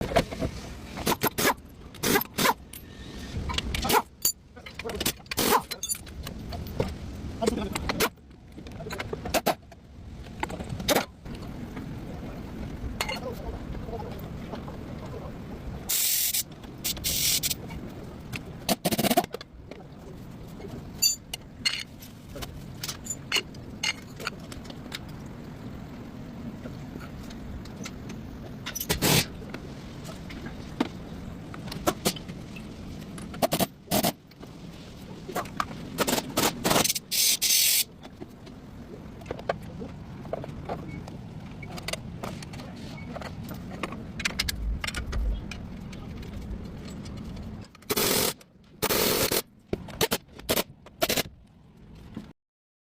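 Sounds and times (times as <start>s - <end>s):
metal tools clinking and scraping: 3.8s - 6.8s, 20.6s - 22.2s, 22.8s - 24.6s
low background hum: 37.8s - 52.3s
noisy bursts: 44.2s - 46.6s.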